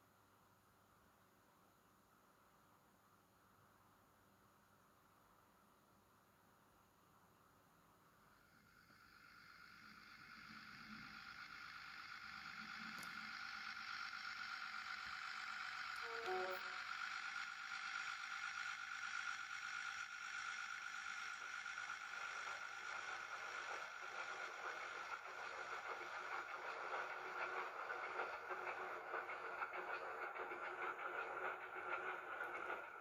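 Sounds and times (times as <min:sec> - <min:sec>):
diesel locomotive running: 0:08.3 - 0:33.0
constant high-pitched tone: 0:08.5 - 0:33.0
brief falling tone: 0:16.0 - 0:16.9.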